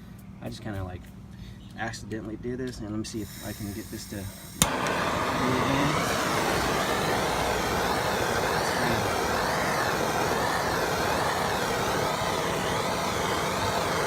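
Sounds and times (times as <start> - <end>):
gas flame torch hissing: 3.1 - 14.0.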